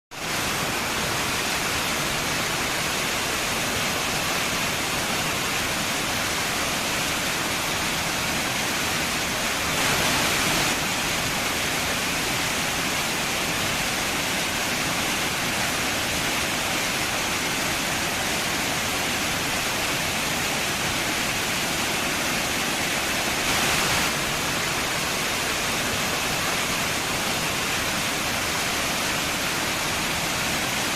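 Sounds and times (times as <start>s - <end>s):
waterfall rushing: 0.2s - 30.9s.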